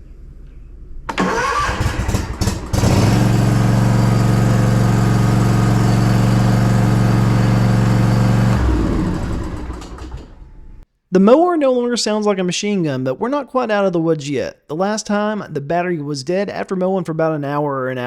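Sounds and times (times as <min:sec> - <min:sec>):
electric starter cranking engine: 0:01.1 - 0:10.8
mower engine running: 0:01.1 - 0:10.8.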